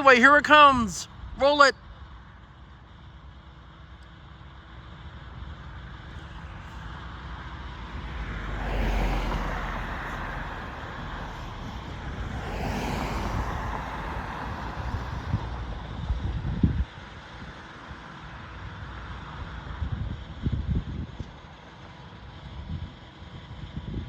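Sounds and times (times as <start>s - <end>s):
passenger train passing: 6.9s - 16.0s.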